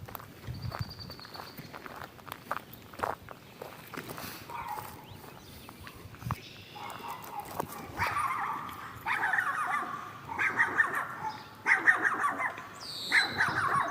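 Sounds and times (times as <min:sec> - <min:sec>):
animal chattering cries: 0:08.0 - 0:13.9.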